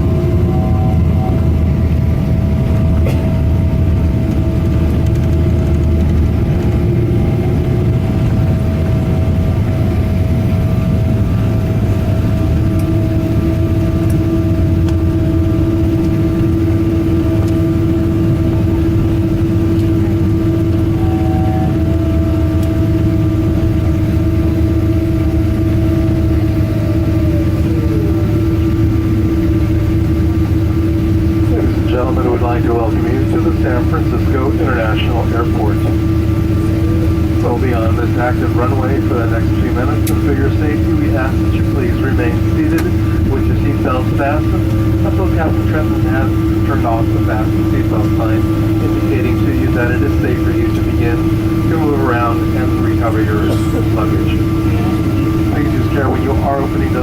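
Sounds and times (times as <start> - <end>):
high tone gliding downward: 0.0 - 2.3, 19.8 - 40.6
jet engine drone: 0.0 - 57.0
steady cabin hum: 0.0 - 57.0
steady tones: 0.0 - 57.0.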